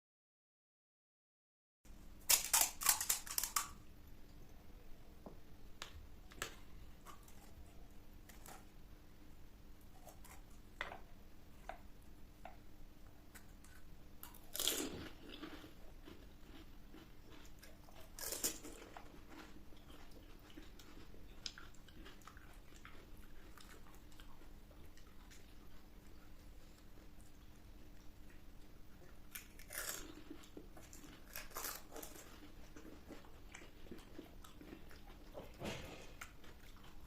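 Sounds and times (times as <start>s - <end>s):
crisp shells crunching: 2.3s - 3.8s, 29.3s - 32.9s
faint chewing clicks: 13.3s - 35.6s.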